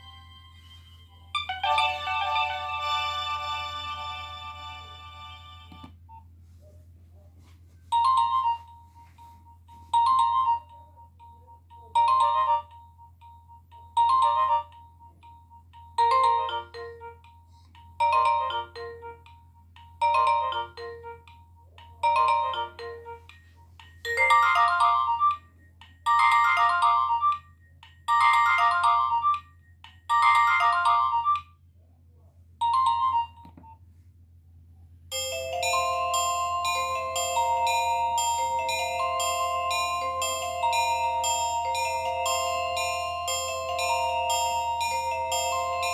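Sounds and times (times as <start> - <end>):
mobile phone ringtone melody: 0.0 - 5.9, 7.9 - 25.5, 26.1 - 27.4, 28.1 - 29.4, 30.1 - 31.5, 32.6 - 33.6, 35.1 - 45.9.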